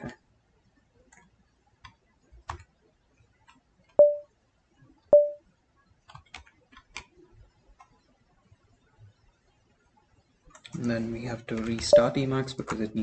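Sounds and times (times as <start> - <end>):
keyboard and mouse clicks: 1.1 - 2.7, 6.1 - 8.0, 10.5 - 10.9, 11.5 - 12.1.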